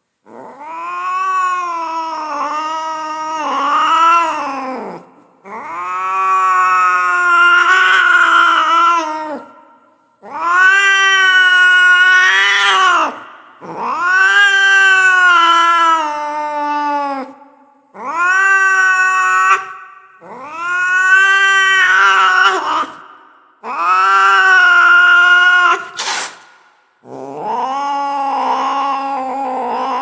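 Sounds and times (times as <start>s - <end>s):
cat yowling: 0.3s - 9.5s, 10.2s - 17.3s, 18.0s - 23.0s, 23.6s - 26.0s.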